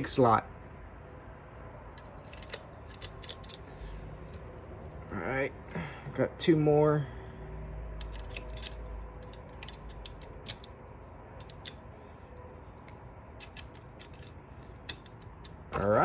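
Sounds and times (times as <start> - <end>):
low steady hum: 0.0 - 16.0
metallic clicks of coil springs: 8.0 - 10.8, 11.4 - 11.8, 12.8 - 16.0.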